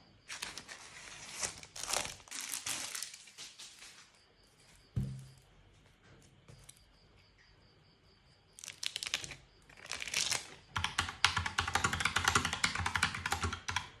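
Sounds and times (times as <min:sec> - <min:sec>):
mechanical keyboard typing: 0:09.8 - 0:14.0.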